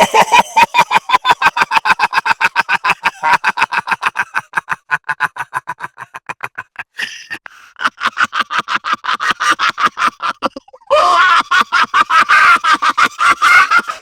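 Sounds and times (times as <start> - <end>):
high-pitched cackling laugh: 0.0 - 14.0
breathy intake: 6.8 - 7.8.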